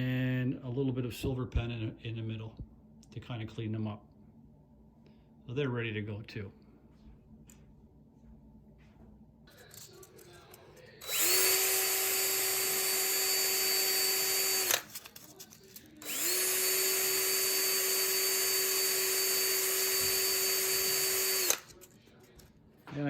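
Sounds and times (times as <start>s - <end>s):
electric drill spinning: 11.0s - 21.9s.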